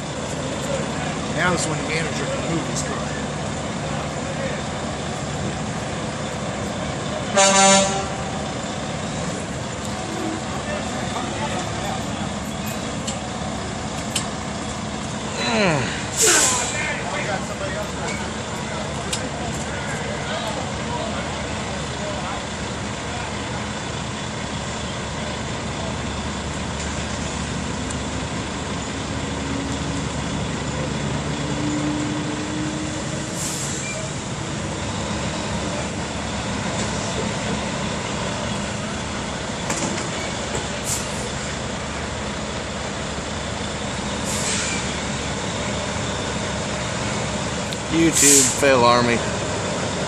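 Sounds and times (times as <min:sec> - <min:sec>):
diesel truck engine running: 0:00.0 - 0:50.0
air-brake hisses: 0:16.1 - 0:16.9, 0:33.2 - 0:34.1, 0:40.8 - 0:41.4, 0:44.2 - 0:45.0, 0:48.1 - 0:48.7.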